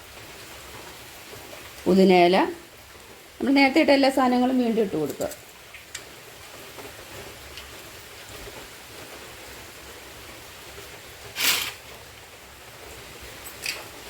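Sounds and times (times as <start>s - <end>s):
steady low hiss: 0.0s - 14.0s
loud rustle: 11.3s - 12.1s.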